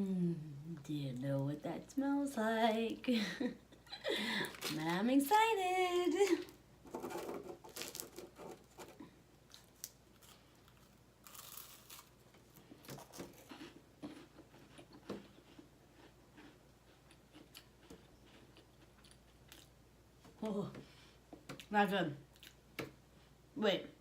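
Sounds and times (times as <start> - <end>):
wrapper crinkling: 4.4 - 5.3, 6.2 - 8.9
wafers crunching being chewed: 9.5 - 19.8.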